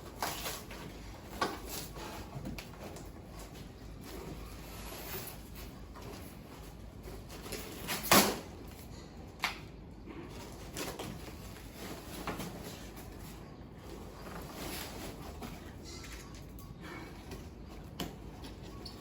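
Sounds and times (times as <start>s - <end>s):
sharp loud crack of cardboard: 7.9s - 8.5s.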